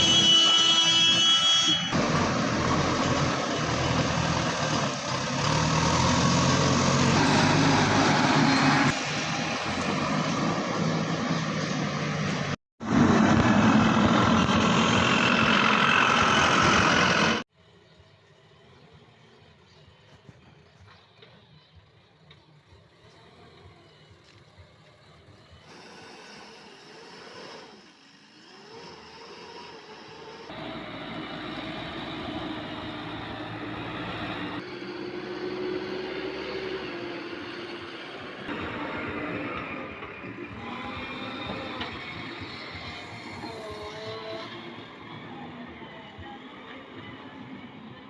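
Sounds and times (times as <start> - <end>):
heavy diesel machinery running: 1.9 - 17.4.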